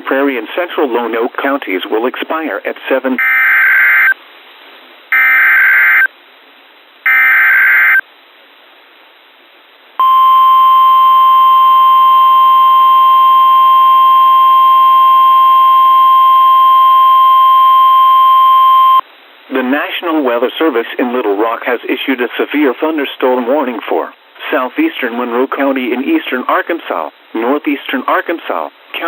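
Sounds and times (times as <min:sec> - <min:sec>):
steady warning alarm tone: 0:05.1 - 0:06.1, 0:07.1 - 0:08.0, 0:10.0 - 0:19.0.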